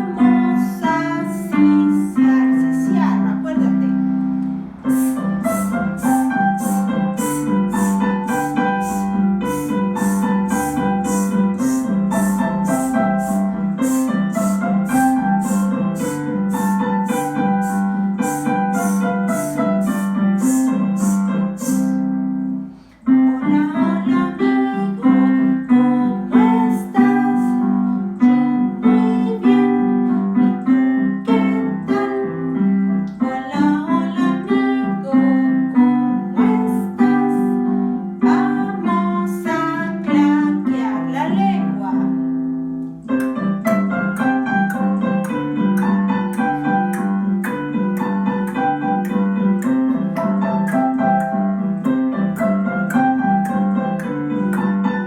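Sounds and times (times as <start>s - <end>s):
instrumental keyboard music: 0.0s - 55.0s
high ticking percussion: 4.9s - 22.0s.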